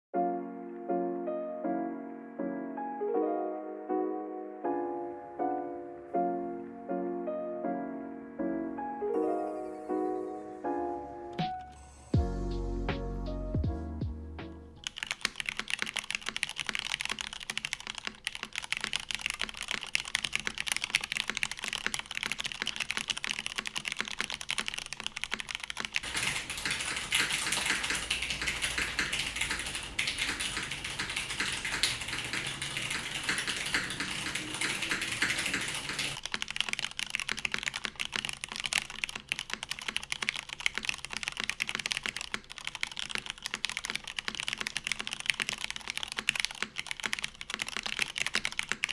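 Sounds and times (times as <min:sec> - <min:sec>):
mechanical keyboard typing: 0:14.8 - 0:48.9.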